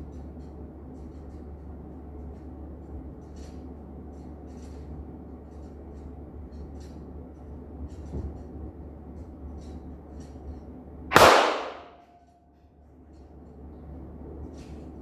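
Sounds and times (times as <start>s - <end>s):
light clicks and rustles: 0.1s - 10.7s
pistol shots: 11.1s - 12.1s
steady low hum: 11.1s - 12.1s.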